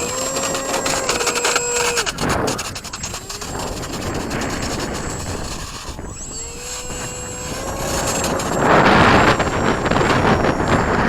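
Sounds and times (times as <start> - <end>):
model aircraft motor whining: 0.0 - 11.0
wind buffeting microphone: 0.0 - 11.0.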